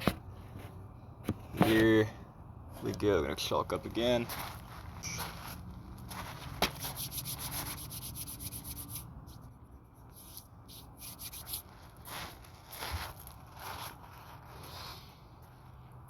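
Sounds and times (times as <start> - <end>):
hands rubbing chalk: 6.1 - 9.5, 10.1 - 15.0.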